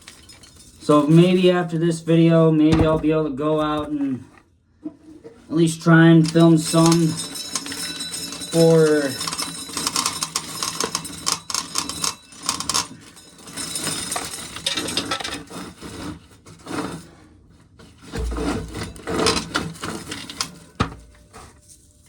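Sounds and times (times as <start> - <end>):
corn kernels scraping and rattling: 0.0 - 4.4, 5.4 - 22.0
dull low bump: 2.7 - 3.4.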